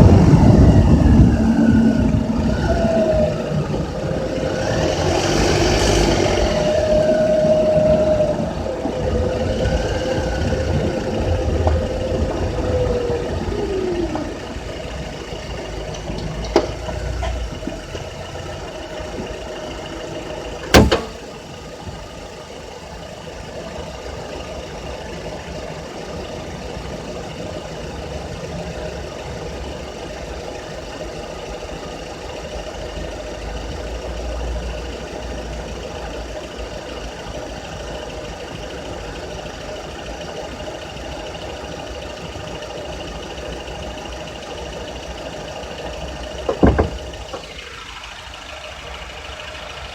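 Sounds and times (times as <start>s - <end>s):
car engine running: 0.0s - 49.9s
sharp knock: 20.7s - 21.2s.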